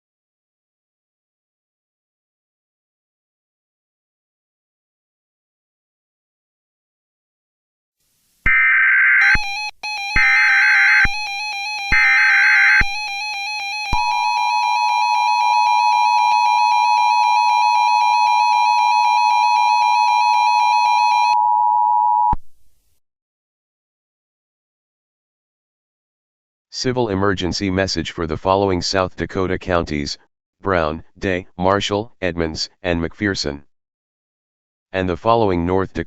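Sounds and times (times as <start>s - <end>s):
screeching data tones: 8.5s - 14.4s
two-tone attention signal: 8.5s - 14.7s.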